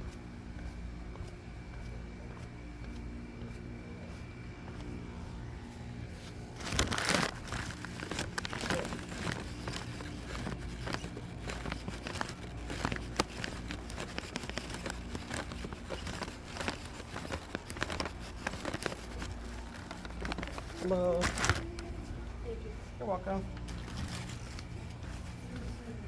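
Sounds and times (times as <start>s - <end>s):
steady low hum: 0.0s - 26.0s
plastic packaging crinkling: 6.6s - 22.1s, 23.5s - 25.2s.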